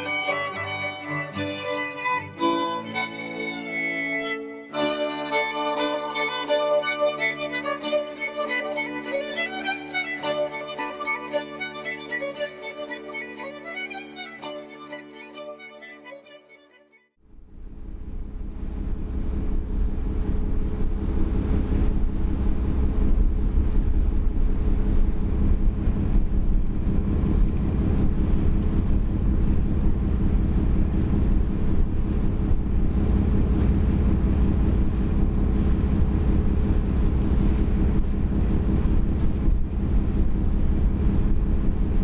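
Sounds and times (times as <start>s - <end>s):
ferry engine drone: 0.0s - 16.0s, 17.2s - 42.0s
wind buffeting microphone: 18.5s - 42.0s.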